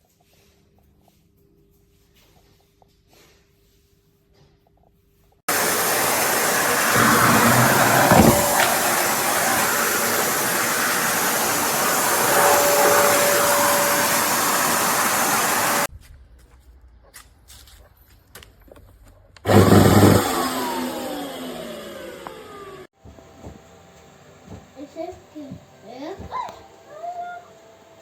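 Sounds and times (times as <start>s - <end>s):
vacuum cleaner running: 5.5s - 15.9s, 19.5s - 23.6s.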